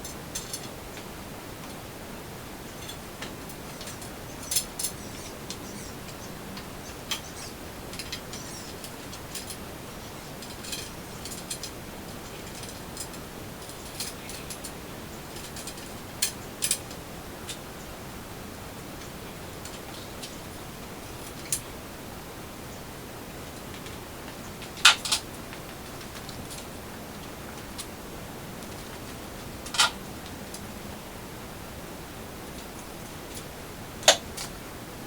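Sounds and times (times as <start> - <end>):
steady hiss: 0.0 - 35.0
hand tools clicking on bolts: 7.1 - 9.6.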